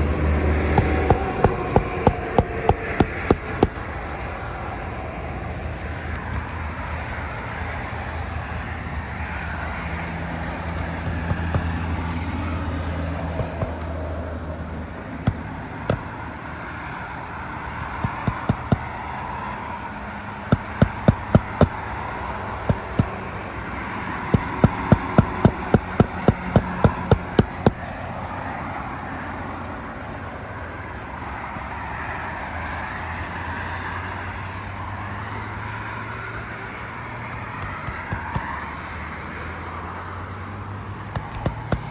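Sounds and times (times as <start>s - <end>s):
vehicle engine drone: 0.0s - 41.9s
hammer striking nails: 0.6s - 4.1s, 10.8s - 12.5s, 13.3s - 14.0s, 15.2s - 16.3s, 17.8s - 19.1s, 20.4s - 23.3s, 24.1s - 27.9s, 37.3s - 38.6s, 41.0s - 41.9s.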